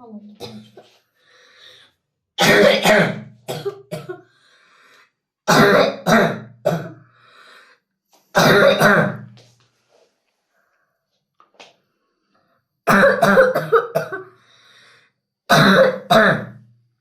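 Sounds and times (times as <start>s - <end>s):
boy coughing: 0.4s - 0.8s, 2.4s - 4.3s, 5.5s - 7.0s, 8.4s - 9.4s, 12.9s - 14.4s, 15.5s - 16.6s.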